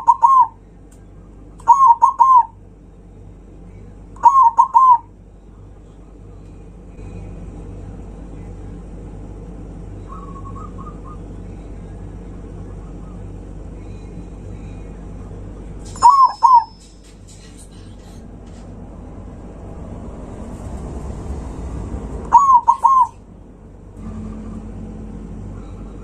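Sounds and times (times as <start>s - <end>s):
dove cooing: 0.0s - 0.6s, 1.6s - 2.6s, 4.2s - 5.1s, 10.1s - 11.3s, 16.0s - 16.7s, 22.3s - 23.2s
low steady hum: 0.0s - 26.0s
faint bird chirping: 4.2s - 5.5s, 9.9s - 11.9s, 22.3s - 23.2s.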